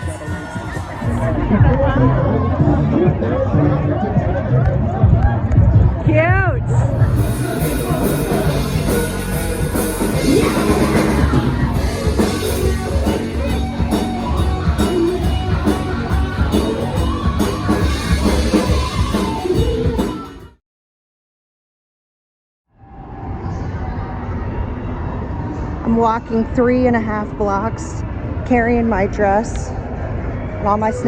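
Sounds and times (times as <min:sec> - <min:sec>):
rock music with singing: 0:06.7 - 0:20.6.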